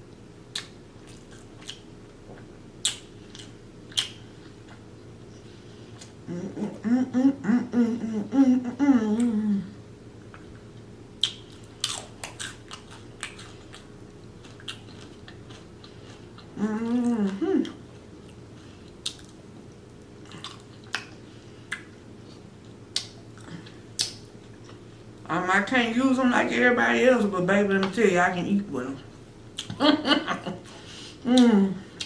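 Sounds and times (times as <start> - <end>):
mouth clicks and smacks: 0.5 - 1.8, 2.8 - 4.3, 11.2 - 12.6, 22.9 - 23.2, 23.9 - 24.3, 29.6 - 29.8
close chewing and biting food: 0.5 - 4.9, 10.2 - 24.8
person humming mm: 6.2 - 9.8, 16.5 - 17.8, 31.2 - 32.0.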